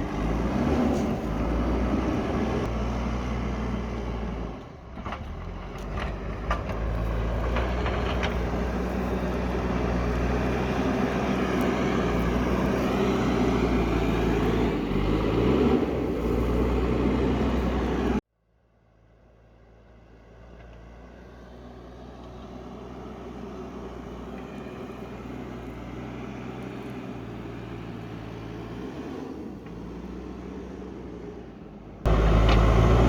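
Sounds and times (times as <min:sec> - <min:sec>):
diesel engine running: 0:00.0 - 0:18.2, 0:21.1 - 0:33.0.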